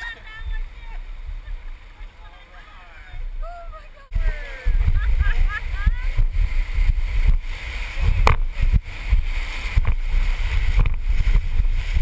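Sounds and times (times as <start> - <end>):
whitewater rushing and splashing: 0.0 - 12.0
wind buffeting microphone: 0.0 - 12.0.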